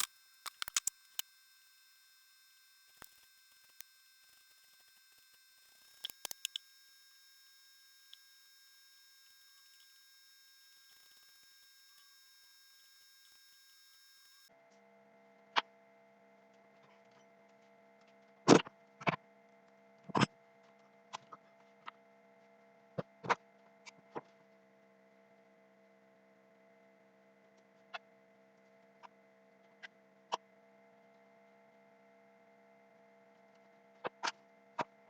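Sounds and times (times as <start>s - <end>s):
sharp clicks and knocks: 0.0s - 1.3s
faint electrical hum: 0.0s - 14.5s.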